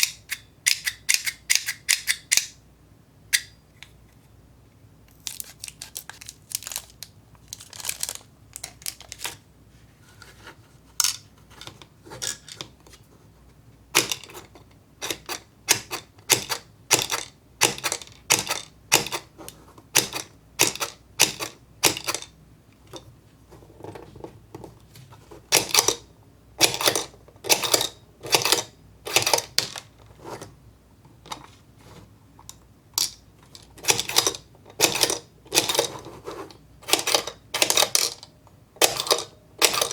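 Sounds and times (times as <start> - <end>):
plastic pieces clicking: 5.1 - 9.4.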